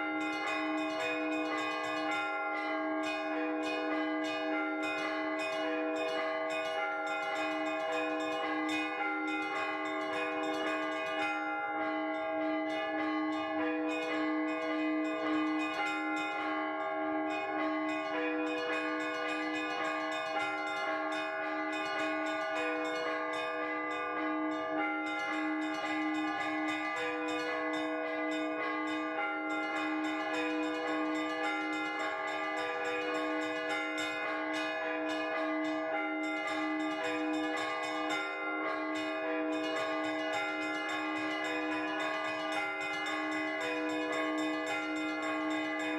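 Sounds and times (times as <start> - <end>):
low bell steady beat: 0.0 - 45.9
small high bells ringing: 0.0 - 45.9.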